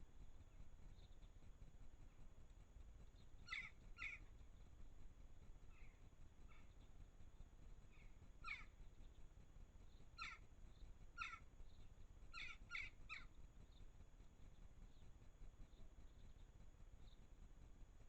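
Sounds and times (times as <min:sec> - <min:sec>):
low background hiss: 0:00.0 - 0:18.0
harsh crow-like bird calls: 0:03.4 - 0:04.3, 0:07.9 - 0:08.8, 0:10.2 - 0:10.5, 0:11.2 - 0:11.5, 0:12.3 - 0:13.3.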